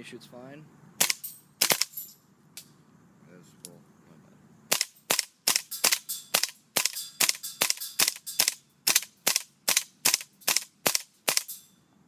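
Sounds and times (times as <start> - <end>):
airsoft gun firing shots: 1.0 - 2.0, 4.7 - 11.6.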